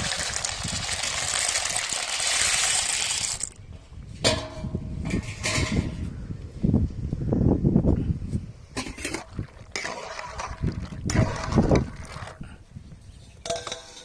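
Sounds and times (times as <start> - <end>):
dry pasta pouring into pot: 0.0 - 3.6.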